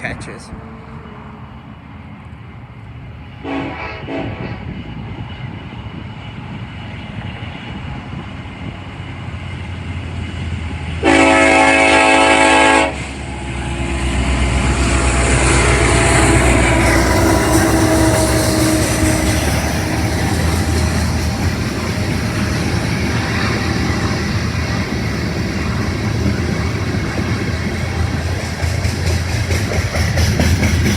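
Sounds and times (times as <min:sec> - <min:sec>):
train engines and wheels rumbling: 0:00.0 - 0:30.9
locomotive horn blast: 0:03.4 - 0:04.8, 0:11.0 - 0:28.4.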